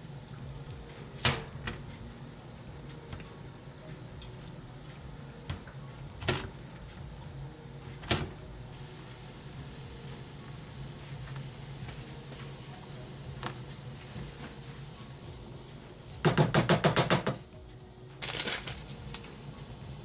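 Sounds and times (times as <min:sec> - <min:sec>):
steady low hum: 0:00.0 - 0:16.2
household objects knocking: 0:16.2 - 0:17.4.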